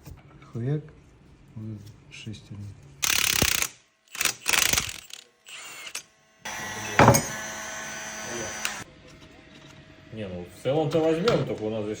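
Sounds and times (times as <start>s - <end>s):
metal parts and tools clanking: 7.0s - 7.4s.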